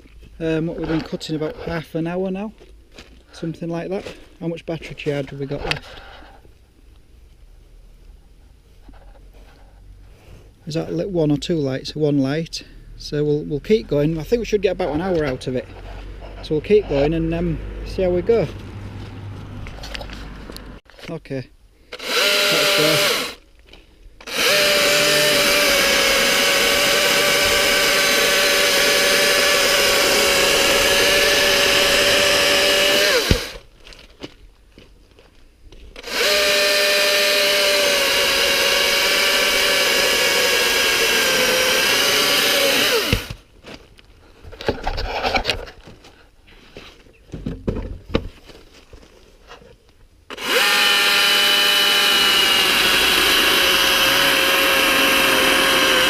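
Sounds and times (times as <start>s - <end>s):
electric chainsaw cutting logs: 21.9s - 23.4s, 24.2s - 33.7s, 36.0s - 43.4s, 50.3s - 56.0s
knocks: 47.3s - 48.3s.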